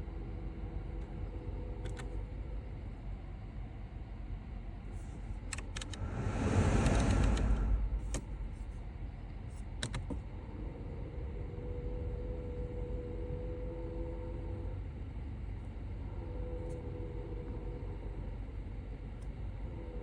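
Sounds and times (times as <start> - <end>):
air conditioning low rumble: 0.0 - 20.0
steady hum with level tones: 5.8 - 20.0
rush of air: 5.9 - 8.8.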